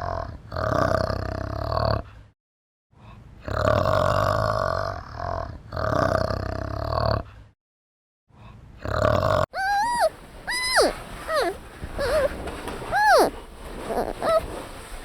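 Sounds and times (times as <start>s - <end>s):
animal grunt: 8.8s - 14.6s
high repeated animal calls: 9.6s - 14.5s.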